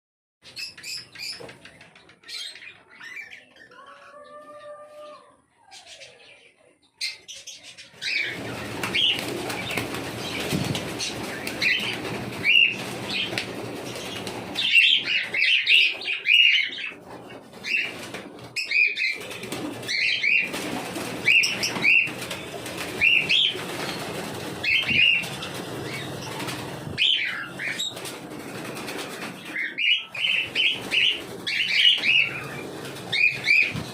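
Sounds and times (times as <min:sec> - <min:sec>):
wings flapping: 0:08.0 - 0:33.9
cockatiels chirping: 0:24.6 - 0:28.0, 0:29.4 - 0:33.9.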